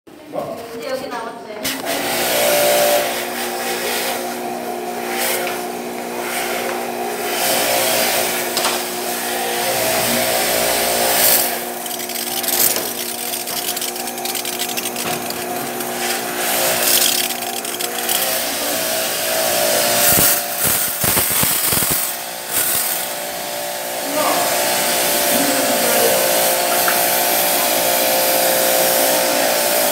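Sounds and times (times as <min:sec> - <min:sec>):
cleaning machine motor running: 0:01.6 - 0:29.9
water spray hissing: 0:09.8 - 0:23.1.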